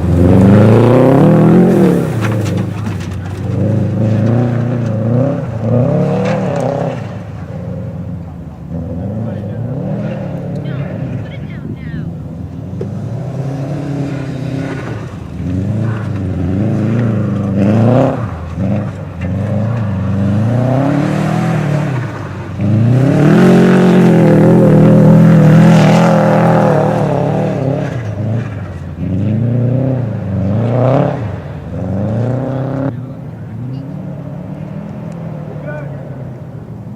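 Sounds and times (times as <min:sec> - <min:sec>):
car engine revving hard: 0:00.0 - 0:36.9.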